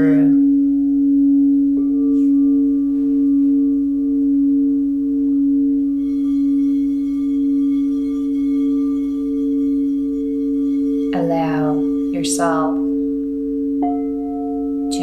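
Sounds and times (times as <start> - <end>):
faint high ringing tones: 0.0 - 15.0
singing bowl tone: 0.0 - 15.0.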